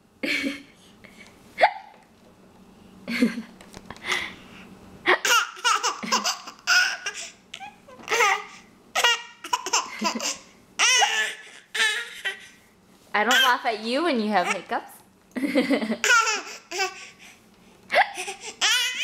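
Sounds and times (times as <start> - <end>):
baby giggling: 5.1 - 12.4, 15.8 - 17.1, 17.9 - 19.0.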